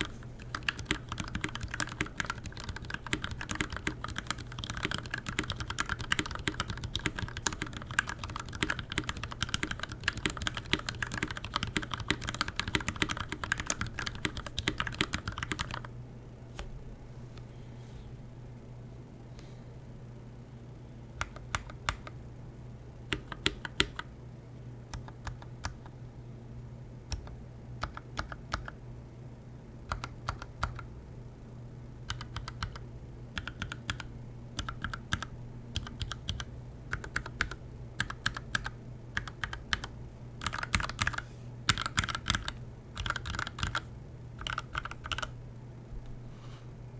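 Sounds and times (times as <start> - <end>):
mechanical keyboard typing: 0.0 - 15.9, 21.2 - 22.2, 23.1 - 24.1, 27.1 - 28.8, 29.9 - 30.9, 32.1 - 32.8, 33.4 - 45.4.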